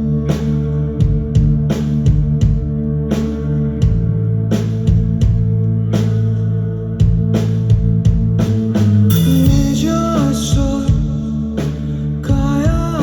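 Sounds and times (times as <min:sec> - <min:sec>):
electric guitar and bass chords: 0:00.0 - 0:13.0
drum hits: 0:09.1 - 0:11.2
person singing: 0:09.1 - 0:13.0.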